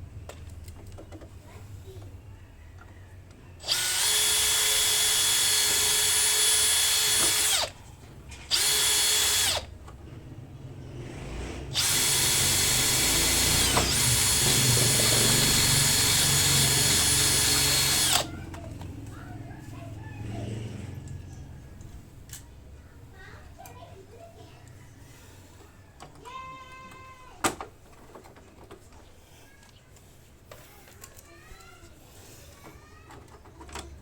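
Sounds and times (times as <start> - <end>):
power drill whining: 3.6 - 7.8, 8.5 - 9.8, 11.7 - 18.4.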